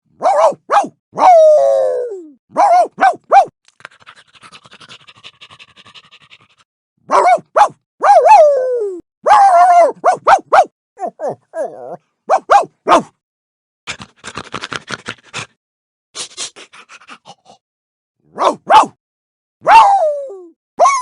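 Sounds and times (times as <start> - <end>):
cartoon dog yapping barks: 0.1 - 3.5, 7.0 - 13.2, 18.2 - 19.0, 19.6 - 21.0
quick dog panting: 3.8 - 6.7, 13.9 - 15.6, 16.2 - 17.6.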